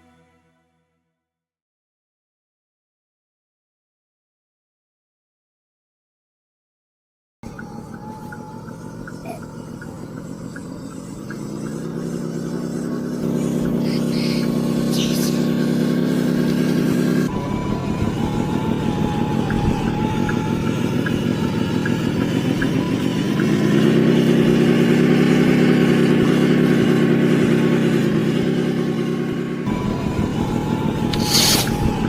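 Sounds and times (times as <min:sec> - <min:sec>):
toy truck engine running: 0:07.4 - 0:32.0.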